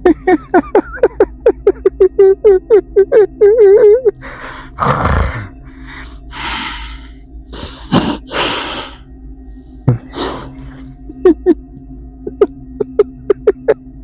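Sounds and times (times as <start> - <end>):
heavy gasping breaths: 4.2 - 11.1
man's voice in pitched pulses: 4.6 - 9.0, 9.8 - 11.0.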